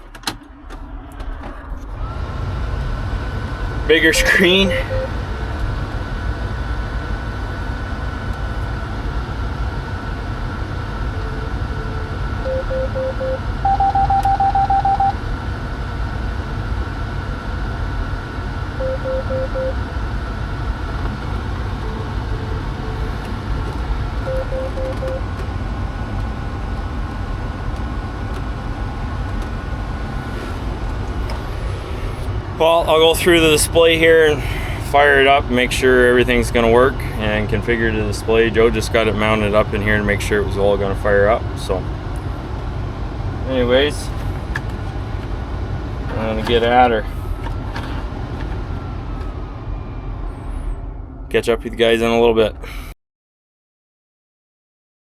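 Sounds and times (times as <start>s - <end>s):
low machine hum: 0.5s - 52.8s
faint high whine: 1.3s - 15.2s, 28.3s - 41.8s
electronic beeps: 3.9s - 5.2s, 12.4s - 15.2s, 18.8s - 19.8s, 24.2s - 25.2s.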